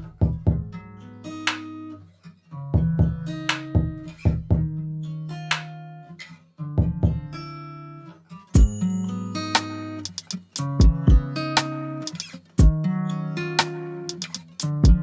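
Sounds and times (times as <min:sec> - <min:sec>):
plucked guitar music over bass: 0:10.6 - 0:15.0.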